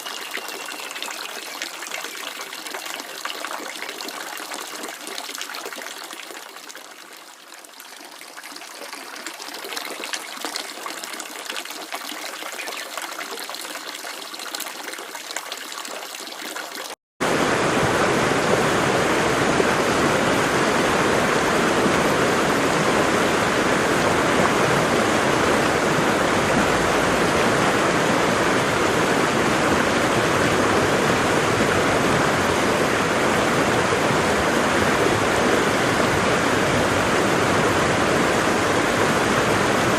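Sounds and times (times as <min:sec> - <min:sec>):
waterfall rushing: 0:17.2 - 0:39.9.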